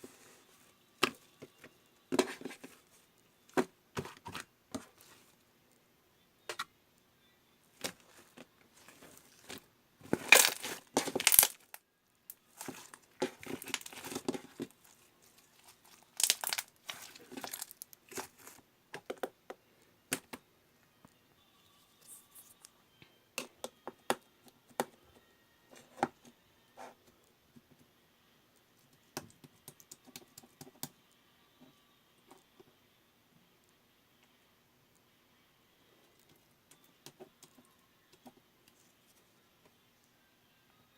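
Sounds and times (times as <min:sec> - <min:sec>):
slime squished by hand: 0:10.2 - 0:11.7, 0:12.6 - 0:18.6.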